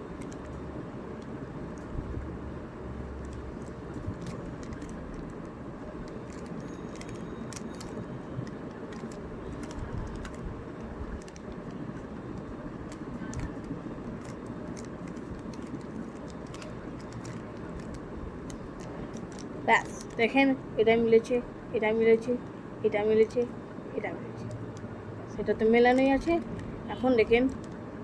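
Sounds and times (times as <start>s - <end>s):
low background hum: 0.0s - 28.0s
plastic puzzle cube clicking: 3.2s - 10.4s, 11.2s - 20.2s.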